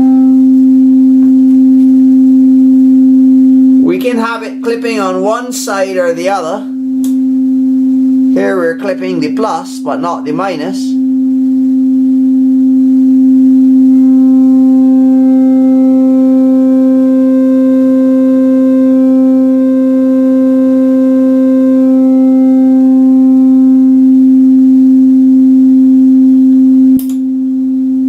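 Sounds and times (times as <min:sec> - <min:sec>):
synthesizer tone: 0:00.0 - 0:08.9.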